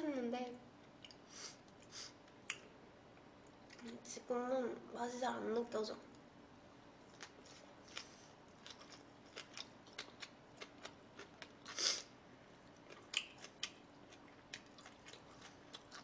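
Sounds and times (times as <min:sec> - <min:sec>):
chewing and eating: 0:07.1 - 0:11.8, 0:12.6 - 0:16.0.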